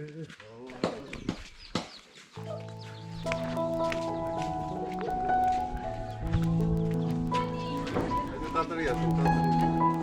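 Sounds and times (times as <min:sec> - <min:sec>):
instrumental song with light beat: 0:02.3 - 0:10.0.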